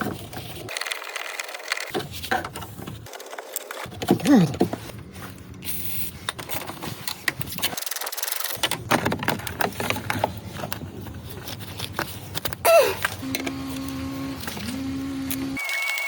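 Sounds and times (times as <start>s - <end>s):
plastic bumper parts handled: 8.6s - 14.8s
person exclaiming: 12.7s - 13.0s.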